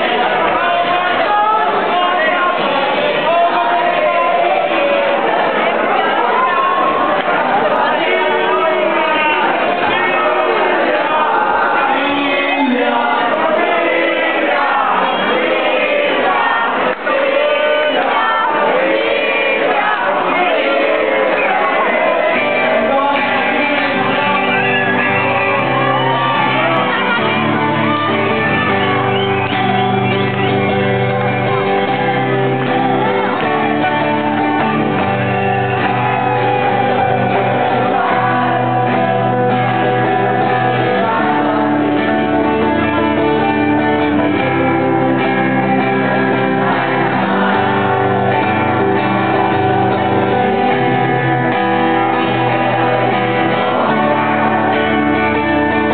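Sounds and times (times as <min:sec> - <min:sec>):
guitar: 0:00.0 - 0:55.9
person singing: 0:07.6 - 0:55.9
bass line: 0:20.6 - 0:55.9.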